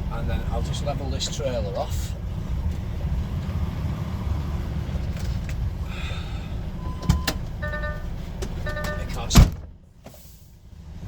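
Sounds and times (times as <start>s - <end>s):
truck engine rumbling: 0.0s - 11.0s
short electronic beep: 6.8s - 9.2s.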